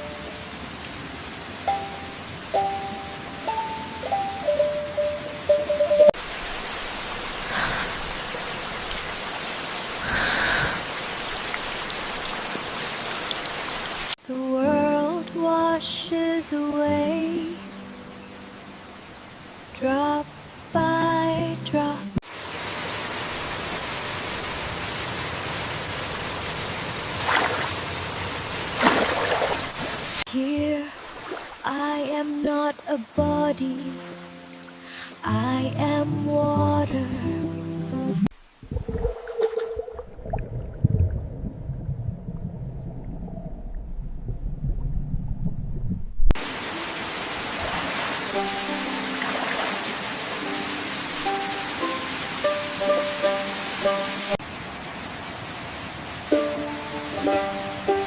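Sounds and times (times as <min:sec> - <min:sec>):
waterfall rushing: 0:00.0 - 0:14.2, 0:14.8 - 0:32.4, 0:46.4 - 0:58.0
muffled water rumble: 0:38.3 - 0:46.4.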